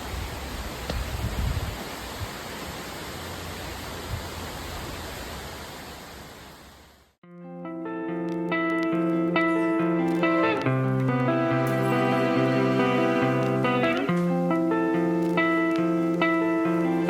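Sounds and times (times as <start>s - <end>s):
rushing outdoor noise: 0.0s - 7.2s, 8.8s - 17.0s
plucked guitar music: 7.2s - 17.0s.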